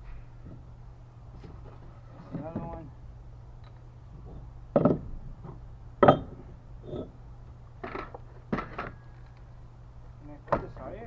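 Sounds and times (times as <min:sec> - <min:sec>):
wooden boards knocking together: 0:04.8 - 0:05.2.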